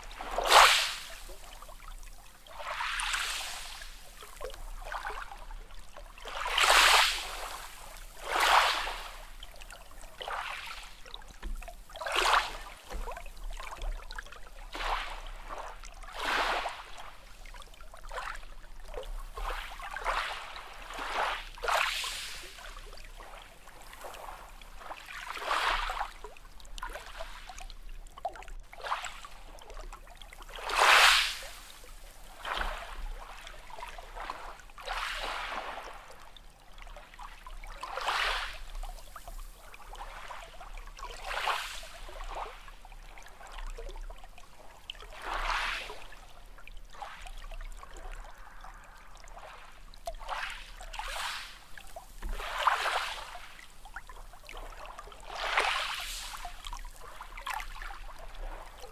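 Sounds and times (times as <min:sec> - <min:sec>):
sea waves lapping: 0:47.9 - 0:53.9.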